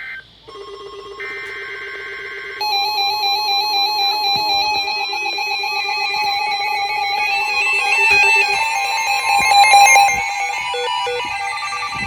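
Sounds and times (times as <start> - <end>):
weather radio alert beeping: 2.6 - 12.0.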